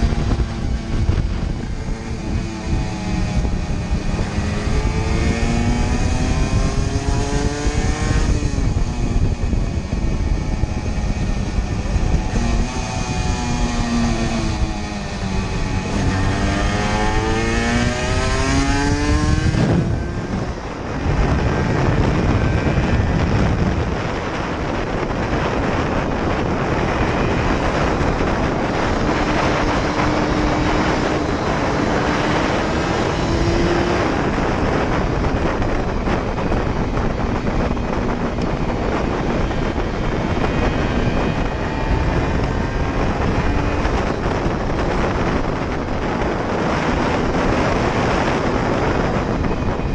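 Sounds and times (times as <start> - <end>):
rush of wind noise at speed: 0.0 - 49.9
two-stroke engine revving: 11.2 - 49.4.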